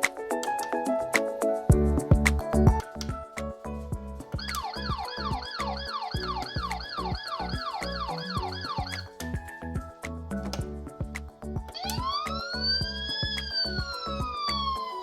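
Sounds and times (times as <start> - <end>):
music with steady beat: 0.0 - 15.0
toy police siren: 4.4 - 9.1, 11.8 - 15.0.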